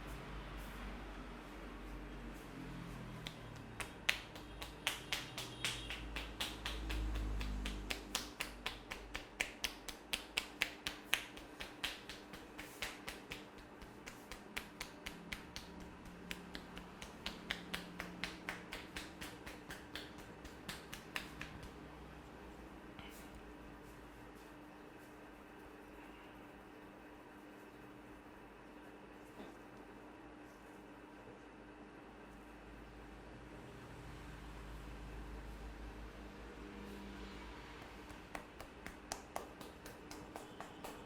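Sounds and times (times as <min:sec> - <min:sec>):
hands slapping and clapping: 0:03.2 - 0:21.9, 0:37.8 - 0:41.0.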